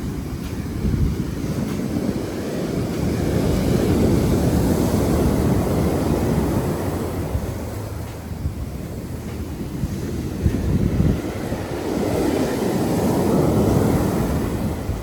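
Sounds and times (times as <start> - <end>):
sea waves washing on shore: 0.0 - 15.0
wind on microphone: 0.0 - 15.0.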